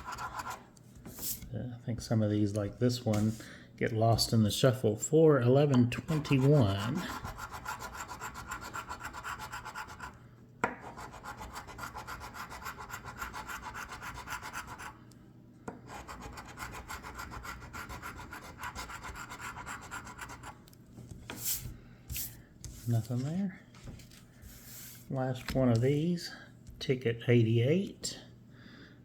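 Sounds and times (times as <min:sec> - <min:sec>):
lottery ticket being scratched: 0:06.0 - 0:10.1.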